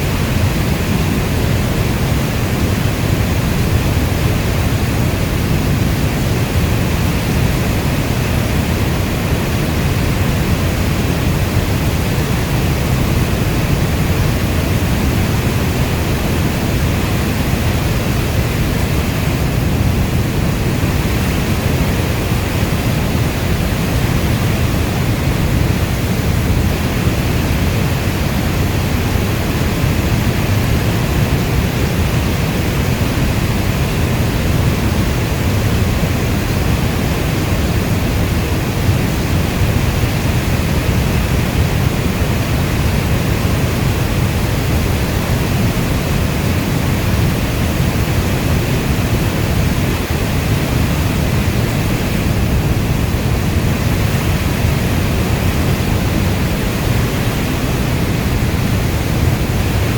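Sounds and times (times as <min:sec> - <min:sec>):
heavy rainfall: 0:00.0 - 0:59.9.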